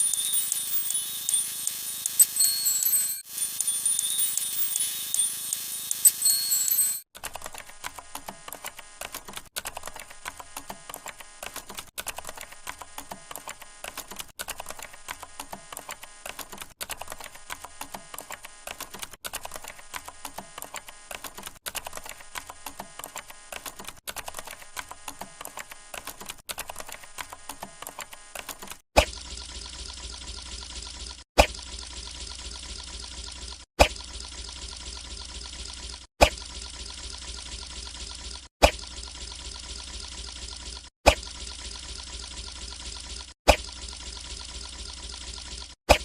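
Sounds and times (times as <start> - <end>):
rapid sharp clicks: 7.2 - 28.8.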